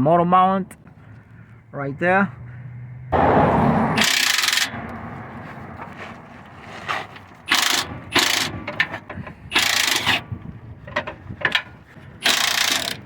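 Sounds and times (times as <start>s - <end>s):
hand ratchet clicking: 7.5s - 8.9s, 9.5s - 10.2s, 12.2s - 13.0s.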